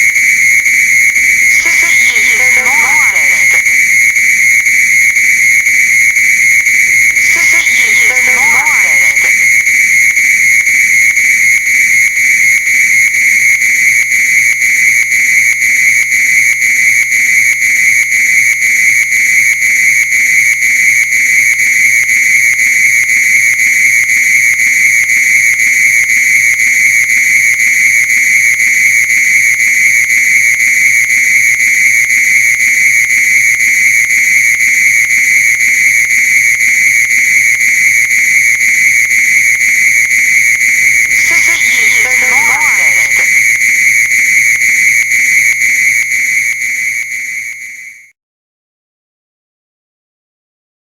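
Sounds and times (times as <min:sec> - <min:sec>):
fire alarm continuous tone: 0:00.0 - 0:15.8, 0:27.6 - 0:43.5, 0:44.1 - 0:48.1.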